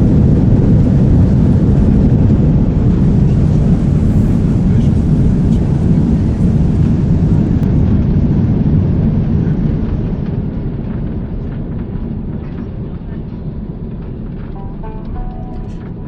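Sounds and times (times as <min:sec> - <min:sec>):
jet engines rumbling: 0:00.0 - 0:16.0.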